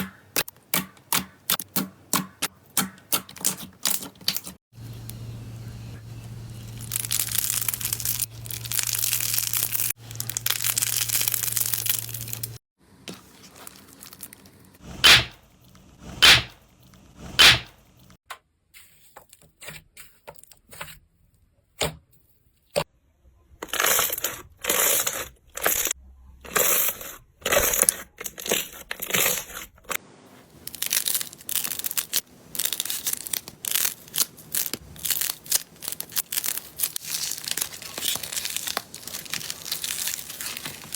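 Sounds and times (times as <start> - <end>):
crunchy crinkly slime bursts: 6.6 - 12.6, 13.2 - 15.4, 30.4 - 40.9
slime crackling: 6.7 - 12.6, 30.6 - 40.9.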